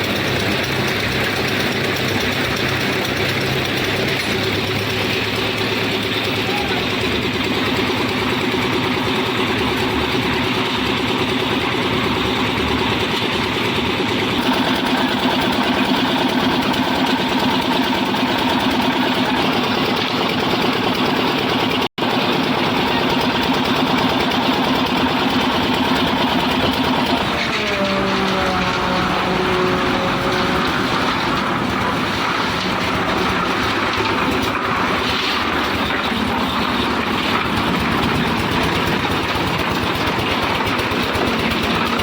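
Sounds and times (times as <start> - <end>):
concrete mixer engine humming: 0.0 - 42.0.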